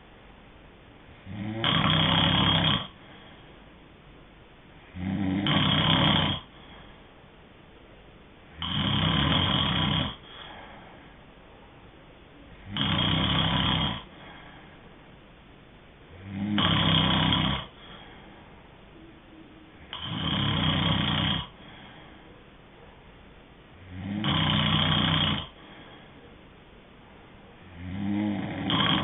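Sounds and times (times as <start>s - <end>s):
quiet breathing: 1.1s - 3.8s, 4.7s - 7.4s, 9.6s - 15.3s, 16.1s - 23.1s, 23.7s - 29.0s
person snoring loudly: 1.2s - 3.0s, 4.9s - 6.5s, 8.5s - 10.2s, 12.6s - 14.1s, 16.2s - 17.8s, 19.9s - 21.6s, 23.8s - 25.6s, 27.7s - 29.0s.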